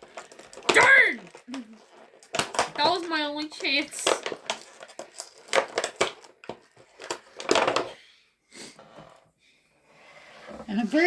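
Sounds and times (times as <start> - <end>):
plastic clicks and knocks: 0.0 - 7.9.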